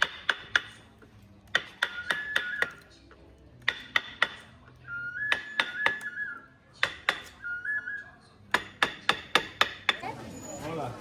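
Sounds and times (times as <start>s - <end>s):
high whistle-like tune: 1.8s - 2.8s, 4.8s - 6.6s, 7.3s - 8.2s.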